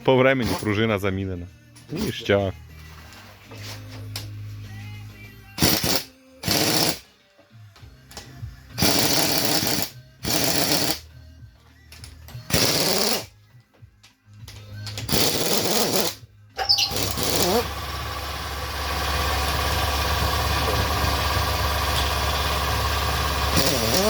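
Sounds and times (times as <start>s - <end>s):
background music: 0.0s - 24.0s
impact wrench rattling: 15.0s - 24.0s.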